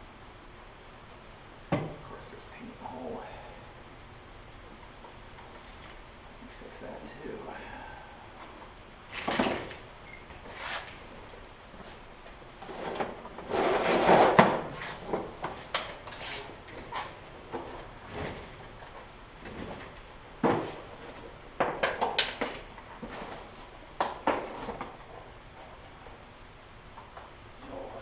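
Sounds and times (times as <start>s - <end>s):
drawer sliding and scraping: 12.6s - 15.3s.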